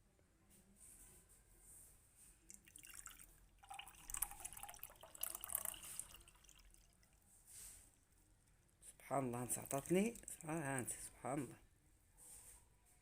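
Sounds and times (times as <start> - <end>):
thick liquid trickling into bottle: 2.5 - 8.2, 9.3 - 11.0.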